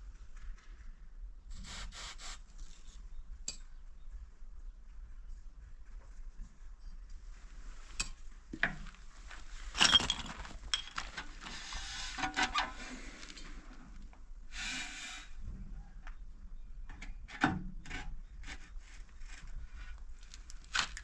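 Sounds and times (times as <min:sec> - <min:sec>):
hard objects knocking and clinking: 0:09.8 - 0:11.1.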